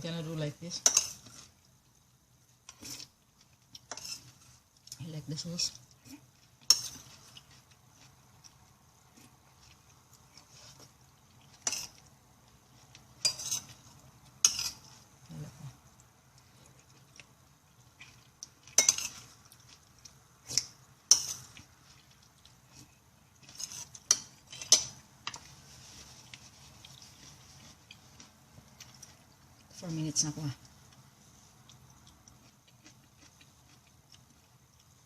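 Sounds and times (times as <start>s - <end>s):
cutlery clinking on a plate: 18.7s - 19.3s, 23.6s - 25.4s.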